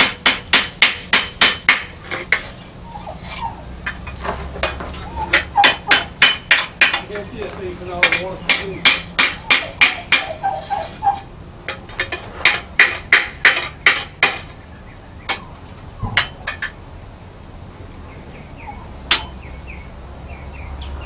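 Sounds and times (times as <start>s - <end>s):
hammer striking steel on anvil: 0.0s - 1.9s, 3.9s - 7.2s, 8.0s - 10.6s, 11.7s - 14.5s, 19.1s - 19.3s.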